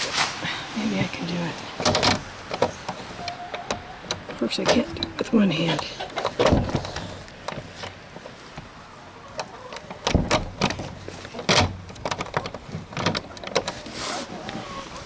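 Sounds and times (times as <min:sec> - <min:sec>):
lock and latch clanking: 0:01.8 - 0:07.6, 0:09.8 - 0:13.8.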